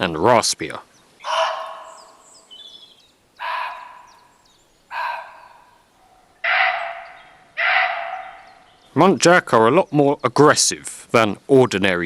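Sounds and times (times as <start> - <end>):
deer barking: 1.2 - 2.5, 3.4 - 8.7.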